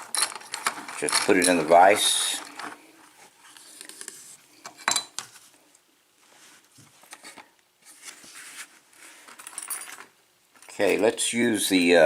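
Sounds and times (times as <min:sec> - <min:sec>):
lock-picking tools clicking and scraping: 0:00.0 - 0:02.8.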